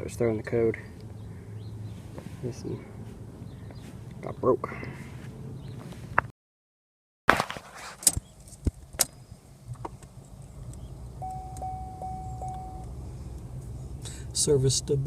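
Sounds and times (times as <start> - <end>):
car warning chime beeping: 11.2 - 13.0.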